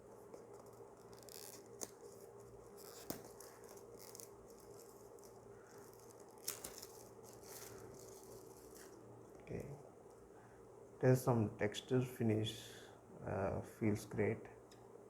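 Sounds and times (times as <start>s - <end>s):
low steady hum: 0.0s - 15.0s
box seal peeling: 0.4s - 9.0s.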